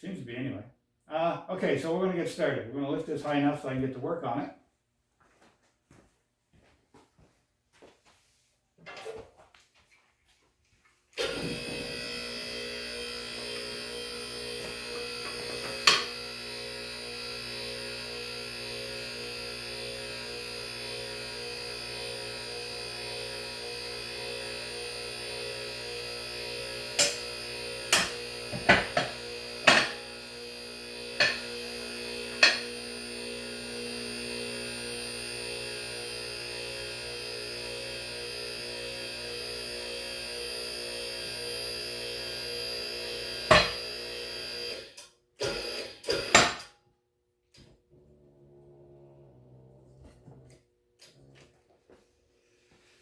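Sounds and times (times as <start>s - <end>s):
electric hydraulic pump humming: 11.2s - 46.6s.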